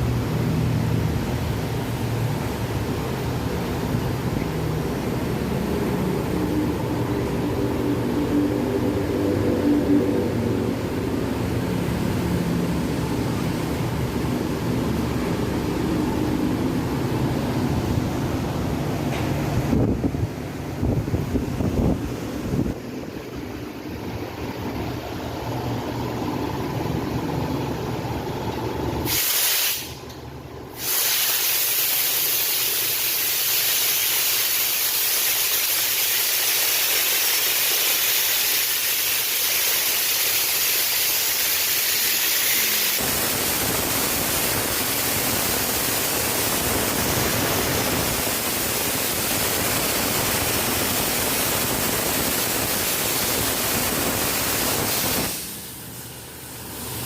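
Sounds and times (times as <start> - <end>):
compressed air hissing from hose: 29.0 - 30.0, 30.7 - 57.0.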